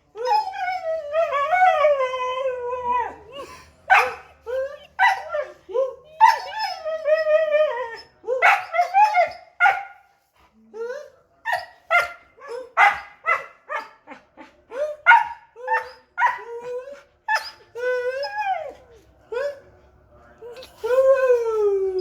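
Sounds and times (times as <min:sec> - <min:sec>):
dog barking and yipping: 0:03.9 - 0:04.3, 0:12.8 - 0:14.0, 0:15.0 - 0:16.5.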